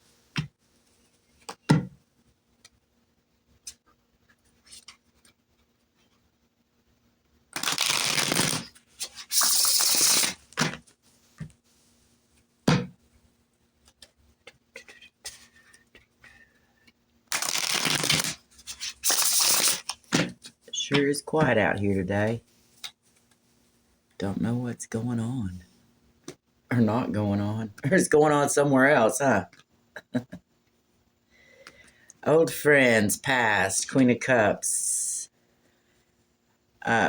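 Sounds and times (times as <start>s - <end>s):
cards being shuffled: 7.6s - 10.9s, 17.3s - 21.1s.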